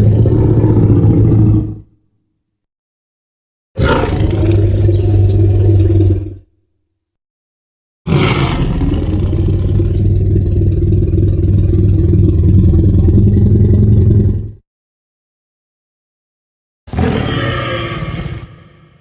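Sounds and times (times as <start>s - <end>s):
low rumbling dinosaur growl: 0.0s - 1.9s, 3.8s - 6.4s, 8.1s - 14.6s, 16.9s - 18.8s.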